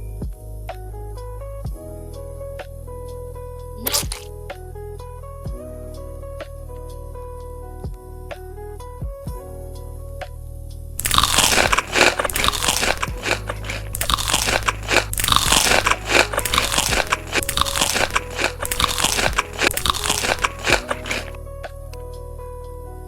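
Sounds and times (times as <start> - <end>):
crunching and chewing wings: 3.8 - 4.3, 11.0 - 21.4.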